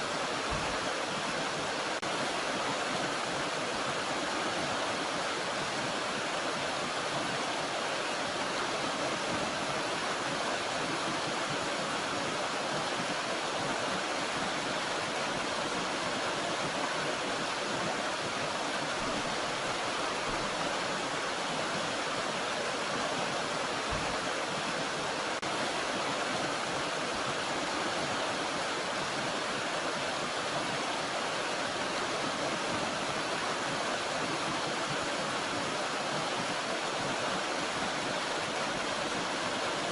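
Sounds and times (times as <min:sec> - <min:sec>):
mountain stream rushing: 0:00.0 - 0:39.9.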